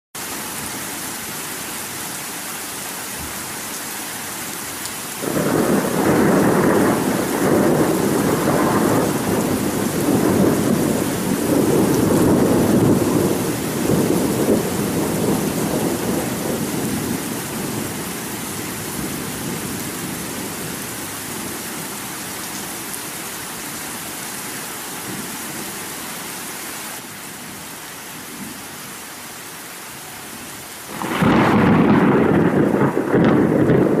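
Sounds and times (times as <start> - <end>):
heavy rain: 0.2 - 34.0
thunder rolling: 5.2 - 18.1, 30.9 - 34.0.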